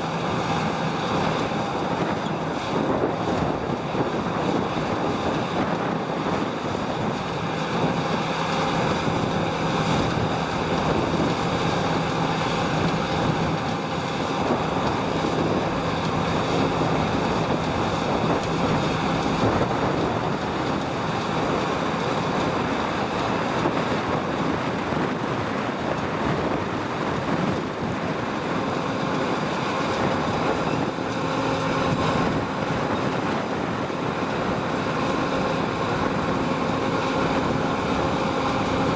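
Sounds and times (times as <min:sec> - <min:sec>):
harvest machinery running: 0:00.0 - 0:38.9
wind noise on microphone: 0:00.0 - 0:38.9.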